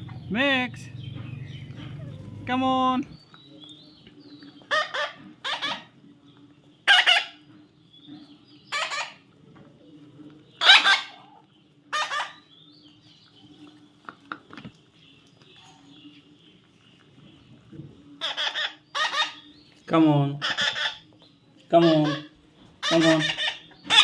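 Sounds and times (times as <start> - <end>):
parrot squawking: 1.3 - 3.2, 4.7 - 6.0, 6.8 - 7.4, 8.7 - 9.2, 10.6 - 12.5, 18.2 - 19.5, 20.4 - 21.0, 21.7 - 24.0.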